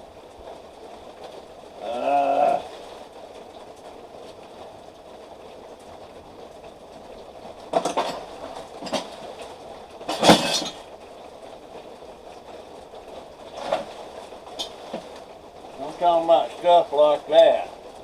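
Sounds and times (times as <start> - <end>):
steady background hum: 0.0 - 18.0
scrap metal clattering: 7.7 - 10.9.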